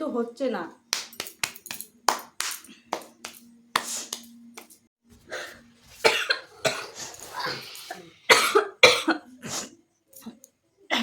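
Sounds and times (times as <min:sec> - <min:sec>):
woman coughing: 0:05.4 - 0:07.0, 0:08.3 - 0:09.7.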